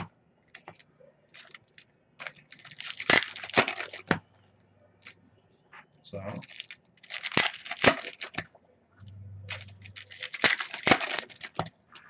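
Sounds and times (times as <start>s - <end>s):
foil wrappers crinkling and tearing: 0.5s - 4.0s, 6.4s - 8.4s, 9.5s - 11.6s.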